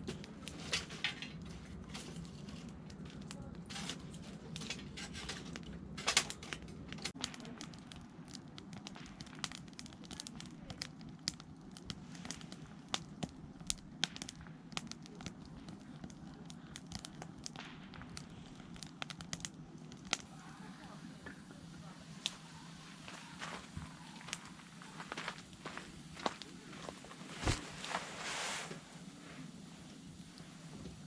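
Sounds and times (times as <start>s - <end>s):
campfire crackling and popping: 0.0s - 31.0s.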